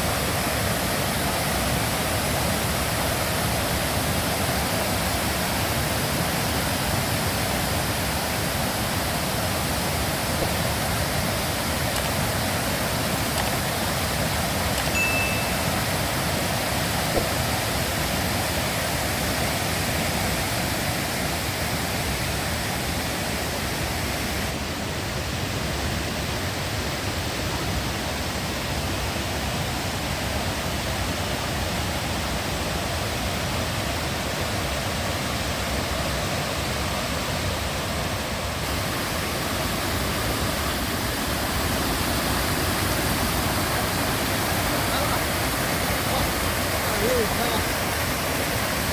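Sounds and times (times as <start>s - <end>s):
waterfall rushing: 0.0s - 25.0s, 38.1s - 48.9s
short high peep: 14.8s - 16.3s.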